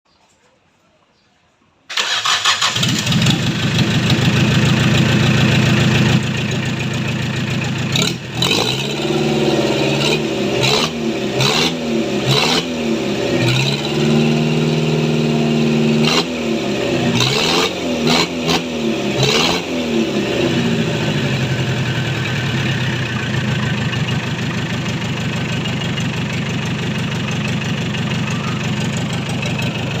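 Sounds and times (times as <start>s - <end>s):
engine running and revving: 2.6s - 30.0s.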